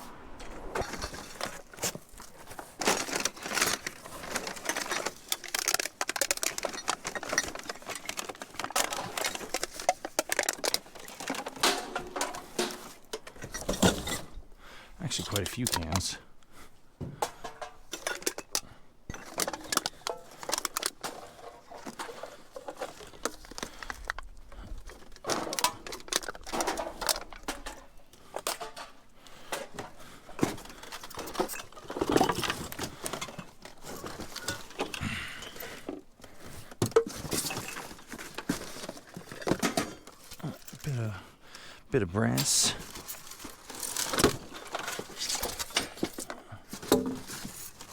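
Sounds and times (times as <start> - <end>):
scrap metal clinking and clattering: 0.4 - 14.4, 17.2 - 24.2, 25.0 - 40.8.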